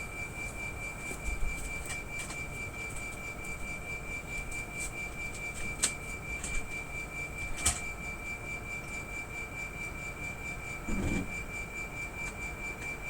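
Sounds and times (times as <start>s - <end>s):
compressor whine and rumble: 0.0s - 13.0s.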